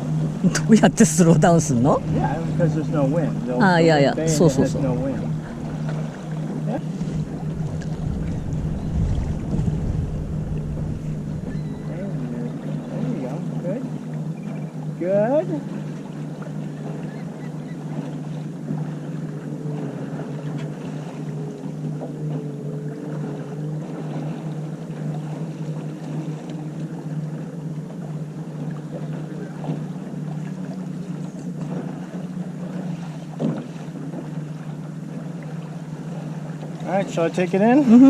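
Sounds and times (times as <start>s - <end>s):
water washing along hull: 0.0s - 38.0s
wind rumble: 4.8s - 13.0s.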